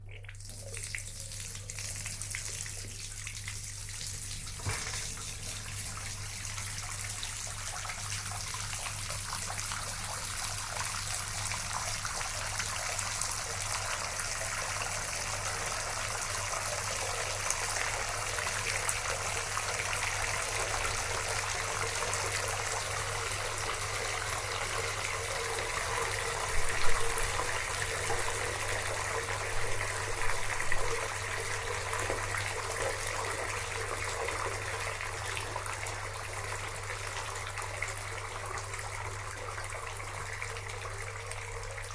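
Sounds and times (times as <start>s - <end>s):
water running into a bathtub: 0.0s - 41.9s
water splash: 4.6s - 5.8s.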